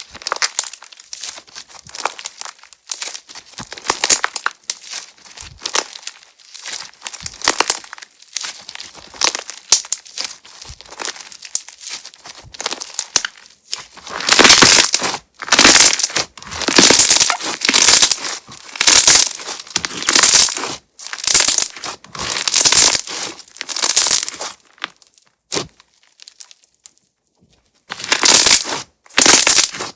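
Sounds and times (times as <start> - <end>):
crunchy slime crackling and popping: 0.0 - 27.0, 27.9 - 29.9.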